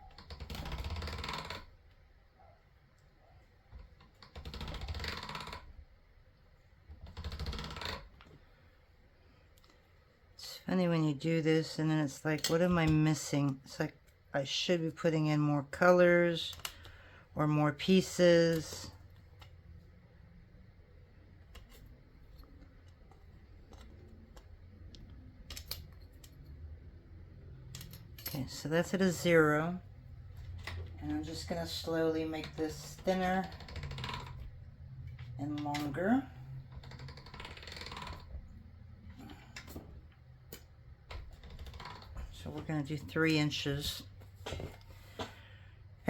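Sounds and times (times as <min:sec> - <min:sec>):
pasta machine gears clicking: 0:00.1 - 0:01.8, 0:04.2 - 0:05.7, 0:30.6 - 0:34.6, 0:36.6 - 0:38.3, 0:40.5 - 0:42.2
low steady hum: 0:08.0 - 0:46.0
clay tools clicking and tapping: 0:11.9 - 0:14.2, 0:16.2 - 0:19.8, 0:21.2 - 0:26.8, 0:27.4 - 0:45.6.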